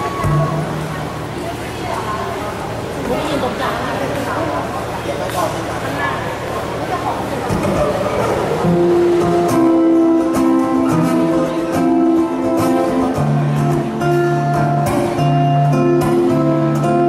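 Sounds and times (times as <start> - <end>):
strummed guitar chords: 7.5 - 17.0
sustained bass notes: 7.5 - 17.0.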